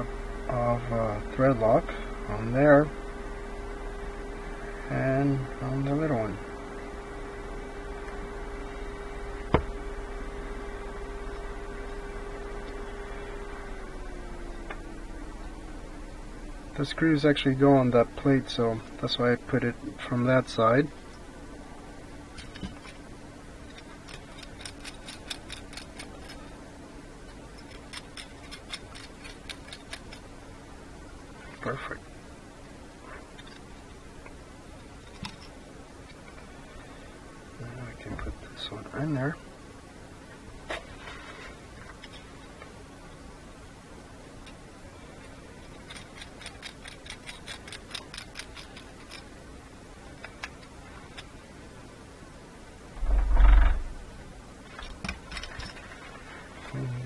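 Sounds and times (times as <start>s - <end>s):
faint steady hum: 0.0s - 57.0s
ratchet clicking: 23.7s - 26.4s
hand ratchet clicking: 23.8s - 26.4s, 45.9s - 49.2s.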